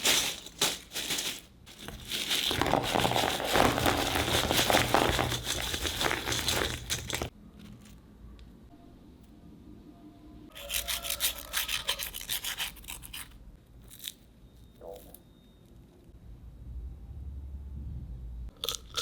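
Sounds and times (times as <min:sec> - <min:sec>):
fries crunching and rustling: 0:00.0 - 0:07.3.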